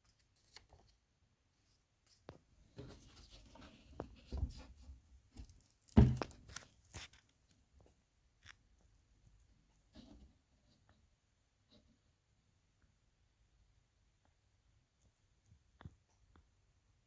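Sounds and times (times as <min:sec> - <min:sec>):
loud thump: 0:06.0 - 0:06.2.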